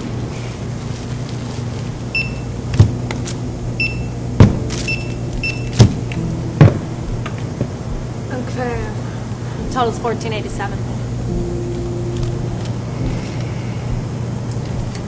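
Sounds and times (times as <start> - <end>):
steady low hum: 0.0 - 15.0
barcode scanner beeping: 3.8 - 4.1, 4.8 - 5.8.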